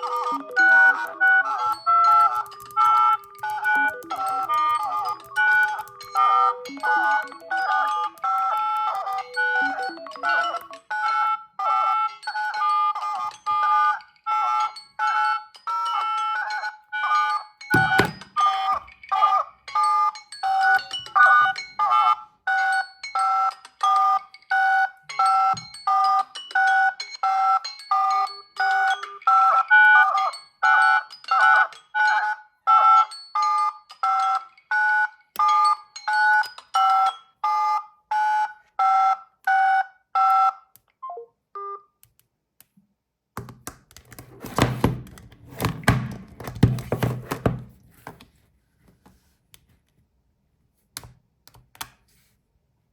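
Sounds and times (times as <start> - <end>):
phone ringing electronic two-note tone: 0.0 - 12.7
clicking and tapping: 2.0 - 6.2.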